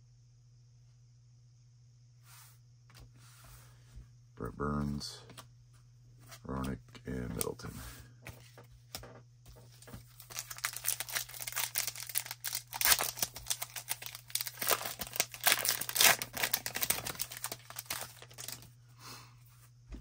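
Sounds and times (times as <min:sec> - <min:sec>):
card pack wrapper tearing: 0:10.1 - 0:18.7.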